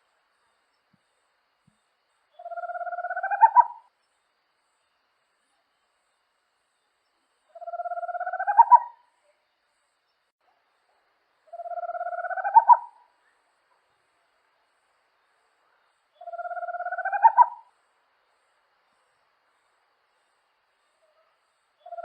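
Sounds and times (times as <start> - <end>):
owl trilling: 2.4 - 3.8, 7.6 - 9.0, 11.5 - 13.0, 16.2 - 17.7.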